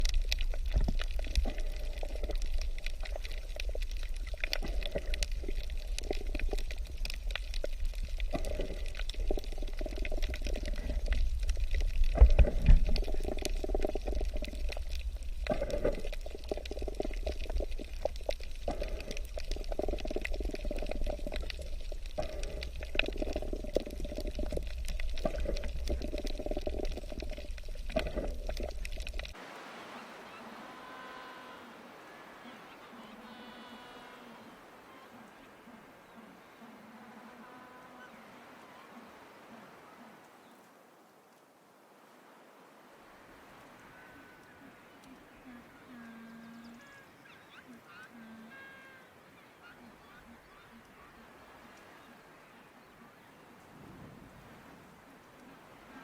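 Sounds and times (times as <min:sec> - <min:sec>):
water bubbling and pouring: 0:00.0 - 0:30.4.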